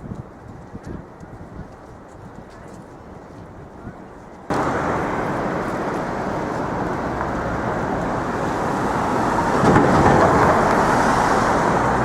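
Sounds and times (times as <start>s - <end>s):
passing vehicles: 4.4s - 12.0s.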